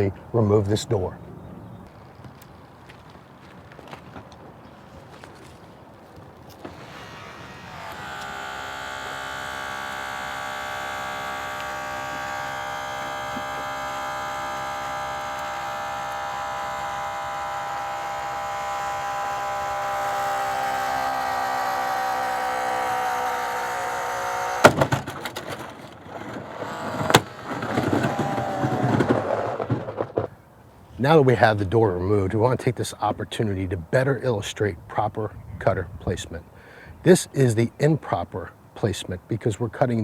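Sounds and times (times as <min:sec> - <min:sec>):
hydraulic cutter motor whining: 0:06.5 - 0:29.8.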